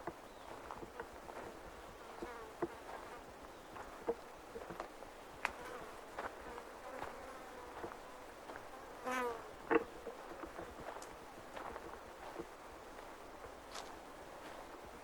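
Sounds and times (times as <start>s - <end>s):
footsteps on forest trail: 0.0s - 15.0s
flying insect buzzing: 5.4s - 10.8s.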